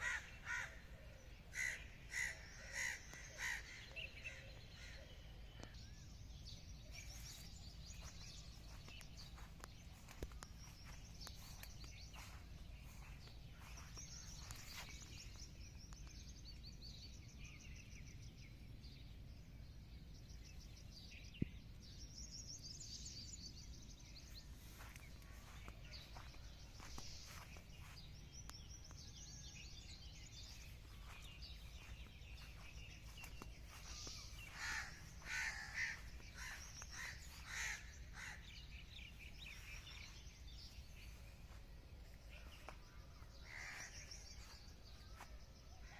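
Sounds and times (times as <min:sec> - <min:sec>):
birds chirping and calling: 0:00.0 - 0:45.9
low background noise: 0:00.0 - 0:45.9.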